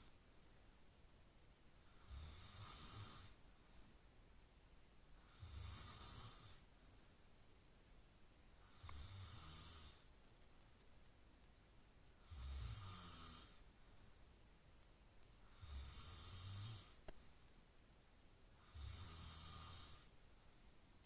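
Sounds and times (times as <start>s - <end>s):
person snoring: 1.9s - 3.4s, 5.2s - 6.6s, 8.6s - 10.0s, 12.2s - 13.6s, 15.4s - 17.0s, 18.6s - 20.1s.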